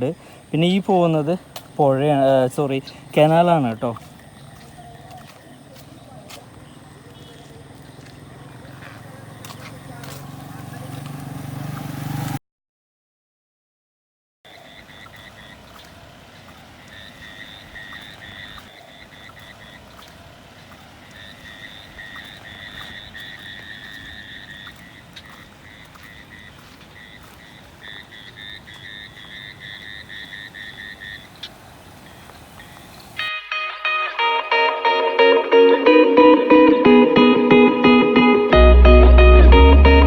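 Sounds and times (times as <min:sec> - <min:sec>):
steady background hiss: 0:00.0 - 0:07.3, 0:26.6 - 0:33.3
frogs calling in chorus: 0:00.0 - 0:11.2, 0:14.5 - 0:33.2.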